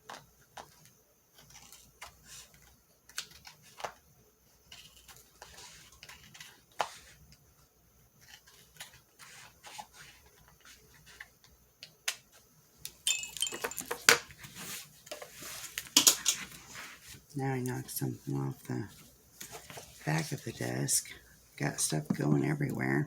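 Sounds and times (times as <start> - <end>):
objects clattering off a desk: 13.0 - 16.6.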